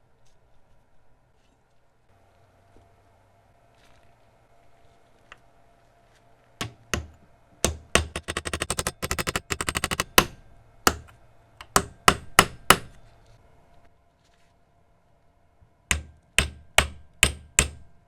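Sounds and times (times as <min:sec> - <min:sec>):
hammer striking metal: 0:06.6 - 0:13.0, 0:15.9 - 0:17.9.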